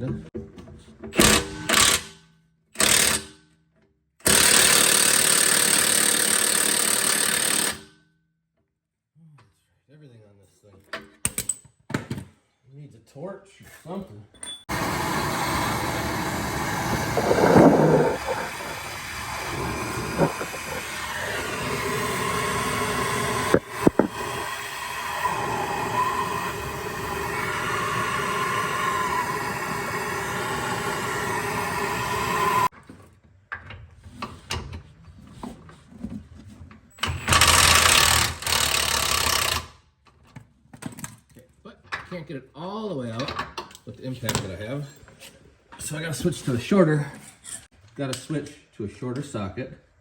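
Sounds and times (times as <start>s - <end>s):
impact wrench running: 2.8s - 3.4s, 4.2s - 7.9s, 14.7s - 32.7s, 37.0s - 39.8s
tool clicks: 23.5s - 24.2s.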